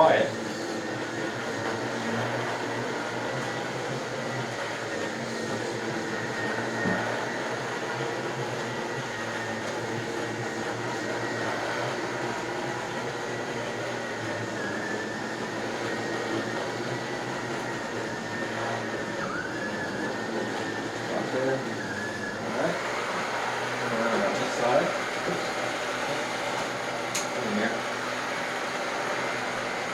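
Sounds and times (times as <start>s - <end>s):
quiet vacuum cleaner running: 0.0s - 29.9s.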